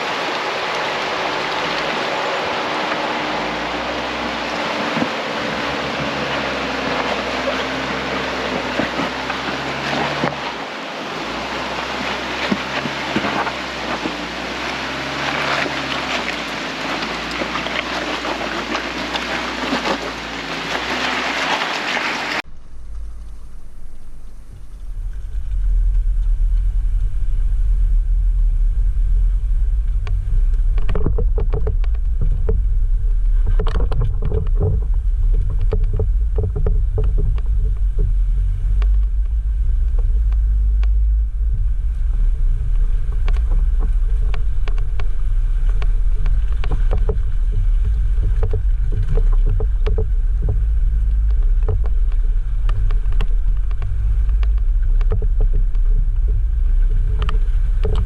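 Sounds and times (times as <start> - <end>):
vehicle rumble on dirt trail: 0.0 - 58.0.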